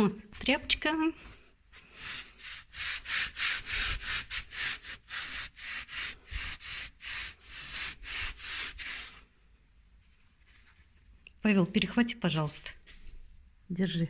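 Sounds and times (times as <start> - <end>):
cloth rag scrubbing: 0.3 - 9.3, 10.0 - 11.1.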